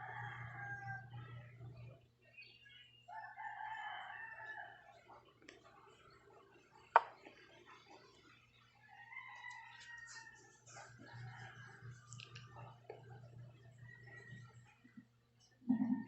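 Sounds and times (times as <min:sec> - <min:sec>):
rooster crowing: 0:00.0 - 0:01.4, 0:03.1 - 0:04.9, 0:08.9 - 0:10.5.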